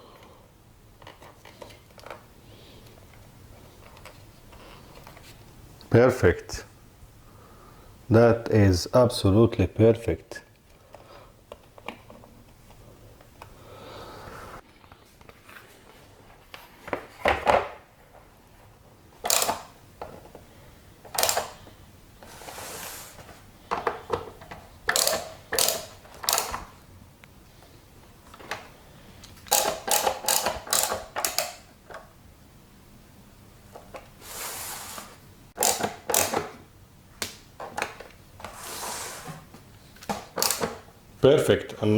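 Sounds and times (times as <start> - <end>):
plastic and metal parts clicking: 19.2 - 20.4, 21.1 - 21.7, 23.7 - 26.7, 28.3 - 32.1, 35.6 - 36.6, 40.0 - 40.8.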